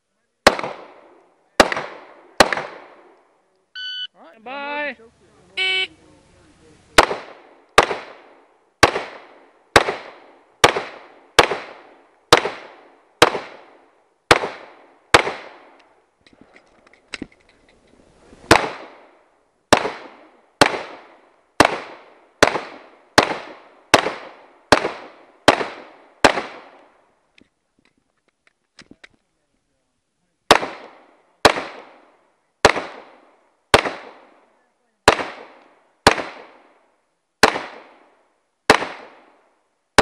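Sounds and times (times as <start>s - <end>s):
pistol shots echoing: 0.4s - 3.2s, 7.0s - 15.8s, 18.5s - 27.0s, 30.5s - 34.4s, 35.0s - 36.8s, 37.4s - 38.1s, 38.7s - 39.4s.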